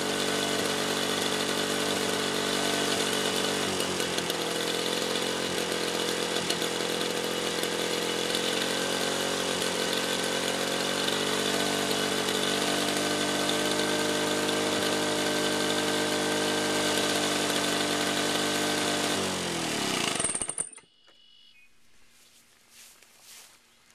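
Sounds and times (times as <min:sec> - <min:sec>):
lawn mower engine running: 0:00.0 - 0:20.9.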